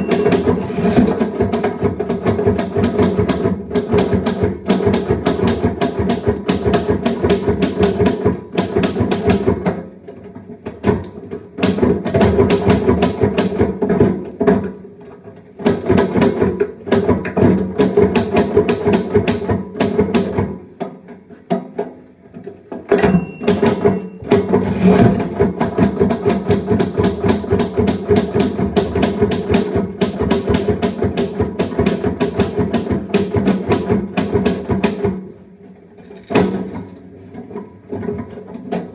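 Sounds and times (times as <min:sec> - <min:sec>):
typewriter margin bell ding: 0:00.0 - 0:01.2, 0:22.9 - 0:24.4.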